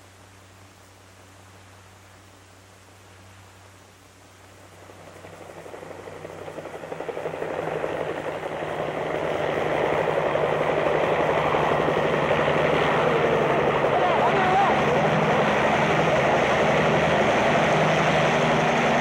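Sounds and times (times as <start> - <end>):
low rumbling roar: 4.8 - 19.0.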